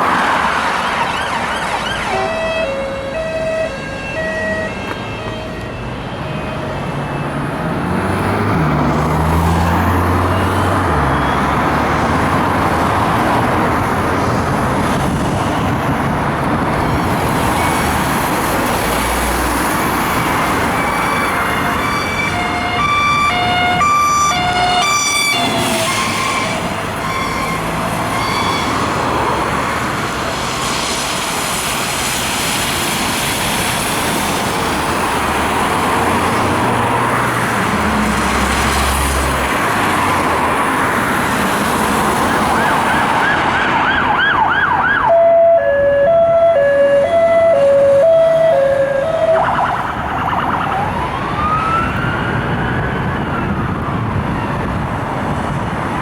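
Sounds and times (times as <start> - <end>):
passing road and engine noise: 0.0 - 56.0
electronic sirens: 0.1 - 13.3, 17.1 - 31.0, 41.6 - 54.7.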